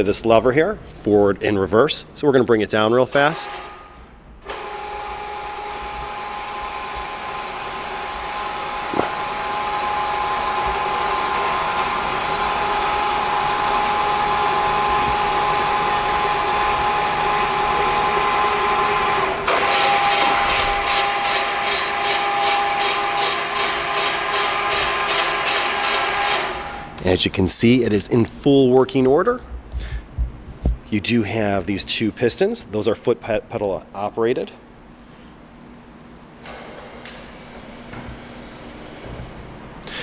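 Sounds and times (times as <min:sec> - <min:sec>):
motor-driven clamp whining: 0:04.4 - 0:26.8.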